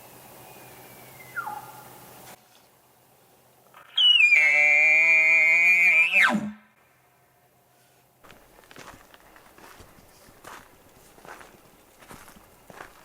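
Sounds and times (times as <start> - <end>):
elk bugling: 3.7 - 6.5.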